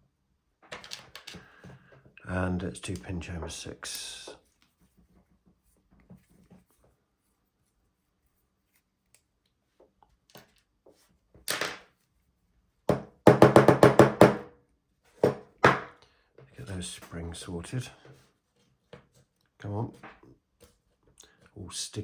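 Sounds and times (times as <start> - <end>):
lock cylinder knocking on surface: 12.9 - 14.4.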